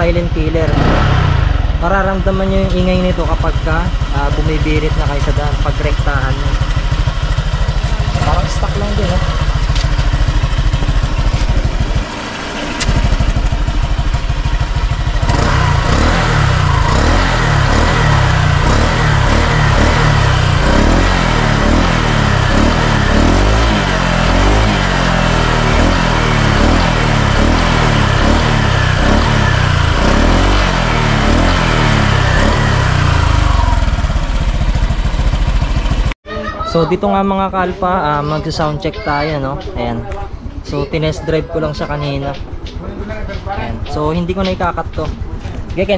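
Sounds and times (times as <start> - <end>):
scooter engine idling and revving: 0.0 - 45.9.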